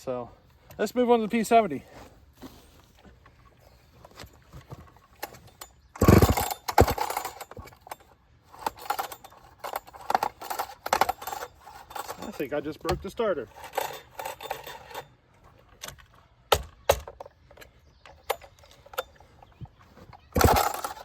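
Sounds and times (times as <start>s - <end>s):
chainsaw recoil starter pulls: 4.1s - 21.0s.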